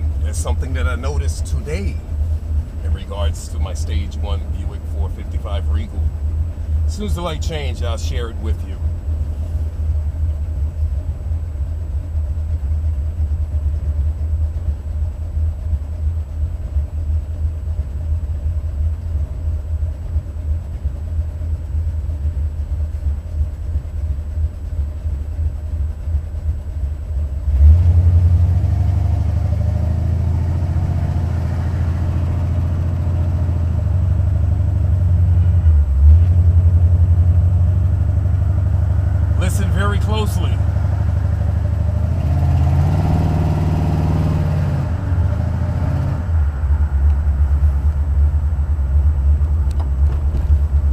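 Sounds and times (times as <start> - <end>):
car engine idling: 0.0 - 50.9
car pulling away: 27.4 - 50.9.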